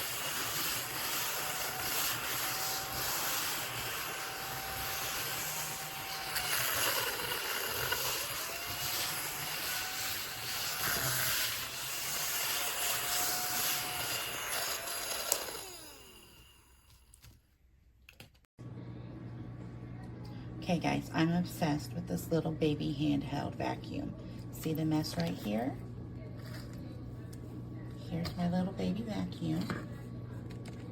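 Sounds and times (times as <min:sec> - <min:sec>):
mini vacuum cleaner motor whirring: 0:00.0 - 0:16.8.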